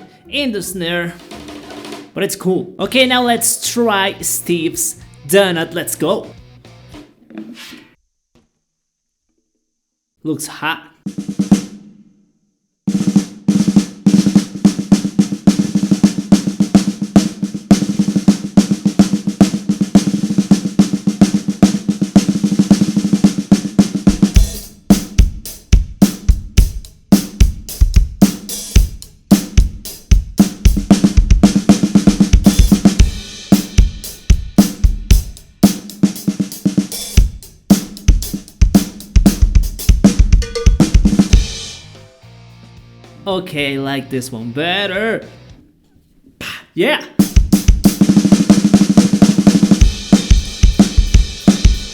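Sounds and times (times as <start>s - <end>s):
drum kit groove with bass drum: 0.0s - 2.2s, 2.8s - 7.7s, 12.9s - 43.8s, 47.2s - 51.9s
snare drum rolls and fills: 1.1s - 2.2s, 12.9s - 41.8s, 47.2s - 51.9s.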